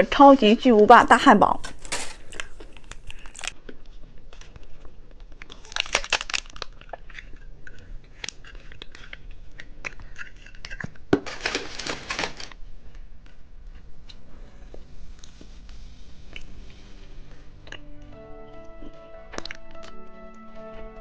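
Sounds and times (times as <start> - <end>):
candy packaging crinkling: 1.0 - 3.6, 4.3 - 12.6
small crackles and clicks: 1.6 - 14.2.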